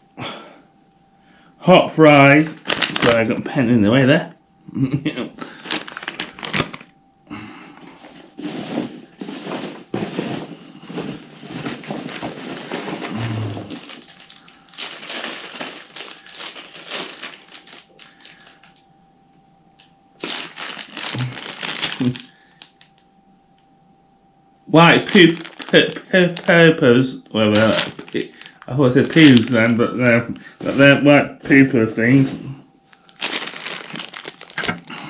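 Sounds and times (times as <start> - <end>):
rustling packing pieces and packets: 2.5 - 3.3, 5.4 - 6.9, 7.7 - 18.9, 20.2 - 23.0, 24.8 - 35.0.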